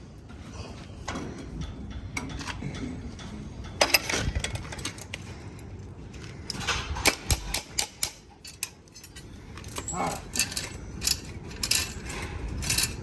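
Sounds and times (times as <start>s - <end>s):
metal clattering and clanking: 0.0s - 5.2s, 6.4s - 13.0s.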